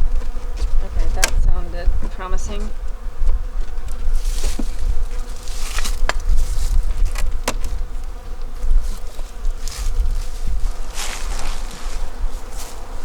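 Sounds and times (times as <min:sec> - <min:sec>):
honeybees buzzing: 0:00.0 - 0:13.0
rustling: 0:03.4 - 0:13.0.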